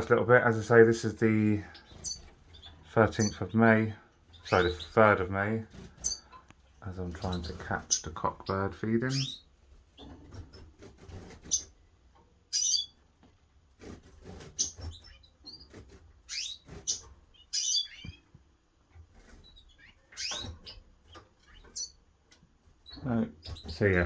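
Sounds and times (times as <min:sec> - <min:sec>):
birds chirping: 0:00.0 - 0:24.0
faint clicks and rustles: 0:09.5 - 0:24.0.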